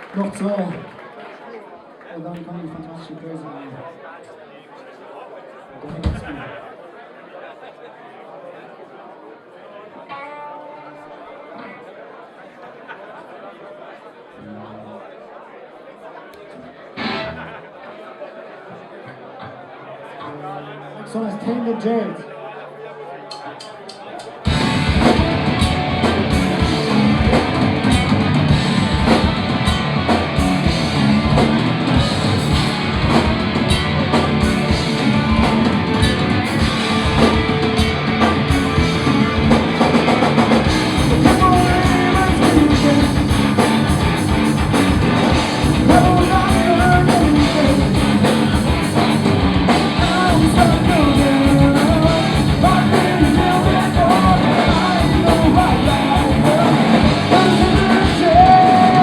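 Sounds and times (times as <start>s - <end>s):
punk rock band playing: 17.0s - 17.4s, 24.5s - 59.0s
person singing: 34.2s - 49.2s, 49.8s - 59.0s.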